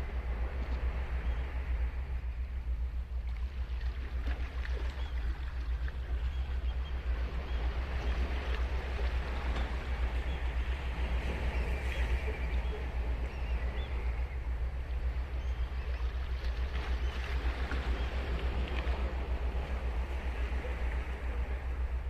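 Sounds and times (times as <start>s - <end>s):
ocean waves breaking on beach: 6.9s - 15.2s, 15.8s - 22.0s.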